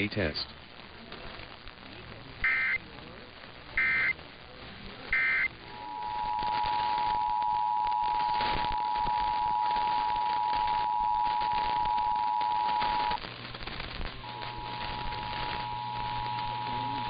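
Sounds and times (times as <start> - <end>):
loud digital data bursts: 2.4 - 2.8, 3.8 - 4.2, 5.1 - 17.0
steady two-tone attention signal: 3.8 - 4.1, 5.2 - 13.2.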